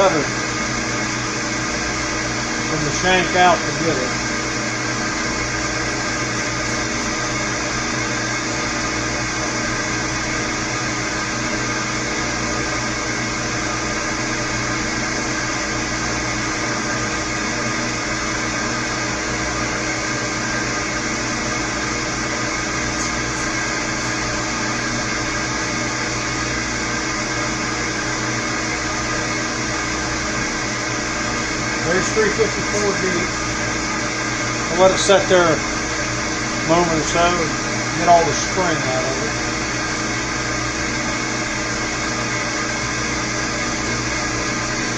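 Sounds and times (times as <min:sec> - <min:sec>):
milling machine hum: 0:00.0 - 0:44.9.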